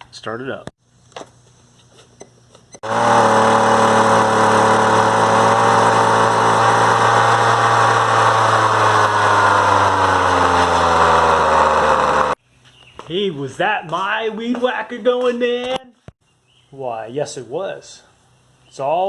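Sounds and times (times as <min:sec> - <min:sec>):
string trimmer engine running: 0:02.8 - 0:12.4.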